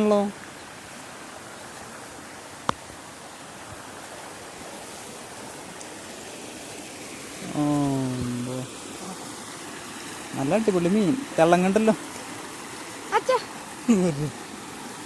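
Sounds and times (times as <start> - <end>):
rushing outdoor noise: 0.0 - 15.0
person speaking: 7.4 - 9.2, 10.4 - 12.2, 13.1 - 14.4.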